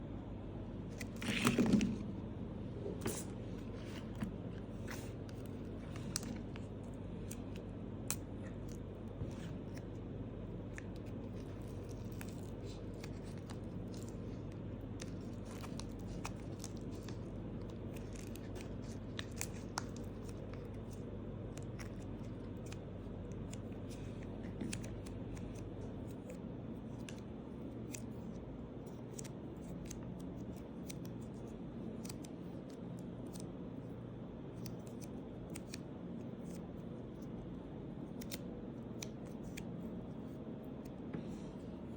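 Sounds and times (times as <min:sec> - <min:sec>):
steady low hum: 0:00.0 - 0:41.9.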